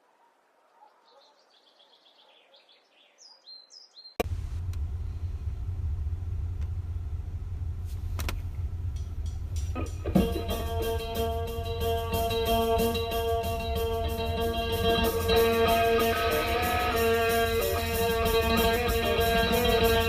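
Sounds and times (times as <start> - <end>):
boat motor rumbling: 4.3 - 20.0.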